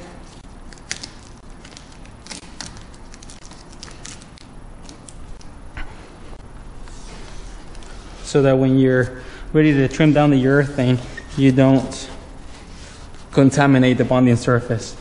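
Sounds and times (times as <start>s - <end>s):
paper towel rubbing and crinkling: 6.8s - 8.6s, 9.7s - 15.0s.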